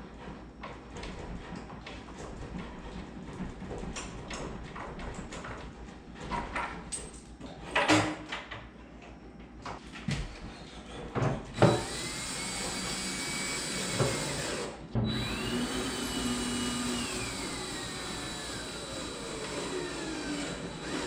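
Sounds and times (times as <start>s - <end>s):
cordless drill driving screws: 11.6s - 21.0s.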